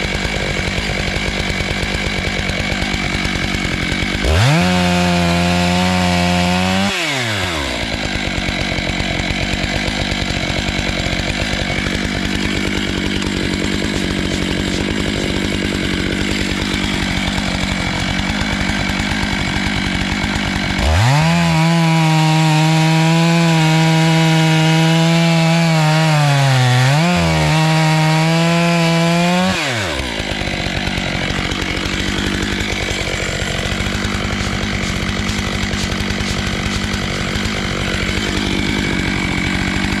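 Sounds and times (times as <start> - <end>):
chainsaw cutting log: 0.0 - 40.0.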